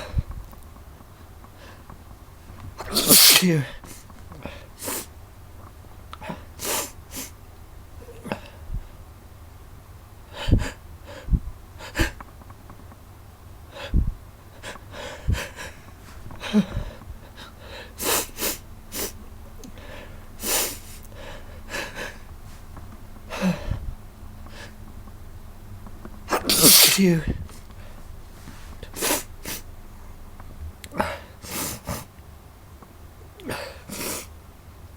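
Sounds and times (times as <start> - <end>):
person sneezing: 2.8 - 4.0, 26.3 - 27.5, 28.9 - 29.6, 31.0 - 32.1, 33.4 - 34.3.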